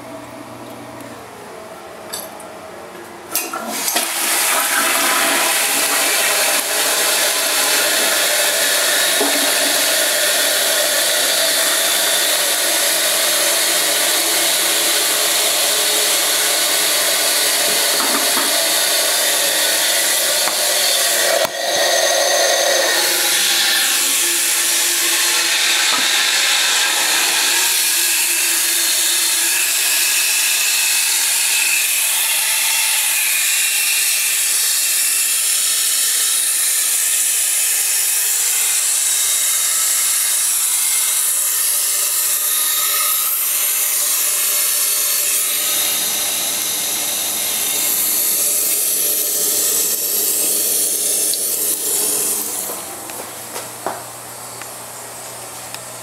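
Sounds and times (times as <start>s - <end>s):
toilet fill valve hissing: 3.3s - 53.0s
water rushing: 3.6s - 13.8s.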